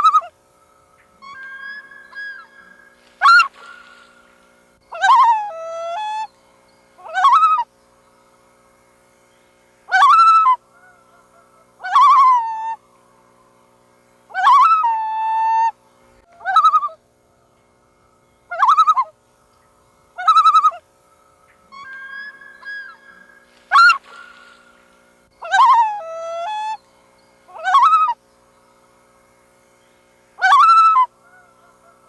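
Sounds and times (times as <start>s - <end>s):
loon calling: 0.0s - 0.4s, 1.0s - 6.3s, 7.0s - 7.7s, 9.9s - 12.8s, 14.3s - 17.5s, 18.4s - 19.2s, 20.1s - 20.9s, 21.5s - 24.8s, 25.4s - 26.8s, 27.5s - 28.2s, 30.4s - 32.0s
faint steady hum: 0.0s - 32.0s.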